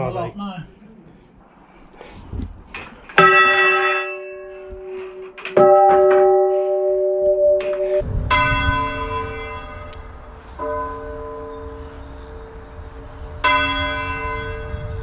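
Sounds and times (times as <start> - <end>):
church bells ringing: 3.2 - 15.0.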